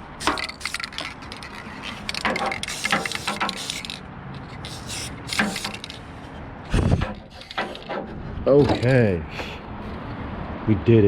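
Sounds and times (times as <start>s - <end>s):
spray paint hissing: 0.1s - 6.2s, 6.8s - 8.0s
spray can rattling: 0.2s - 6.2s, 7.0s - 8.0s.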